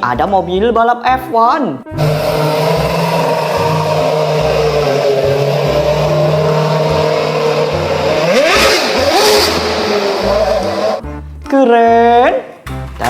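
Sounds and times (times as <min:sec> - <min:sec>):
toy car electronic engine sound: 0:02.0 - 0:11.0.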